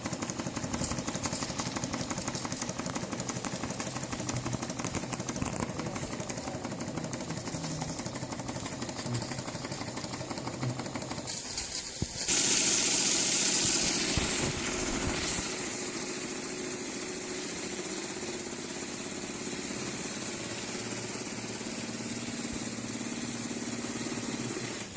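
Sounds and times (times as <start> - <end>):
model steam engine running: 0.0 - 24.9
loud steam hiss: 10.7 - 24.9.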